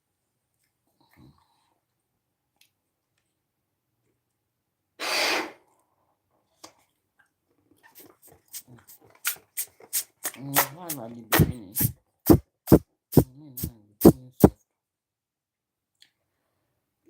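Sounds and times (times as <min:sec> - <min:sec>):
breath puff on microphone: 0:11.4 - 0:14.6.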